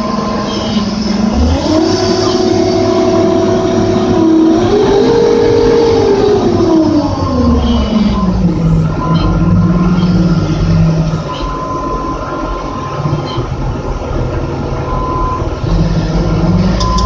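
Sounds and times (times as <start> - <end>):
crane engine revving: 0.0 - 17.0
high warning beep: 11.3 - 13.4, 16.8 - 17.0.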